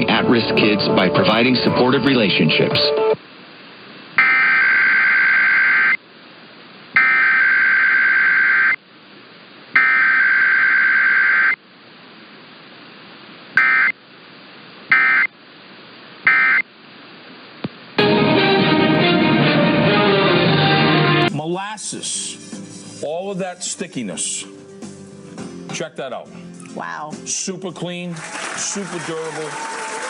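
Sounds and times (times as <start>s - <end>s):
warbling two-tone data bursts: 13.6s - 14.0s, 14.9s - 15.3s, 16.3s - 16.6s.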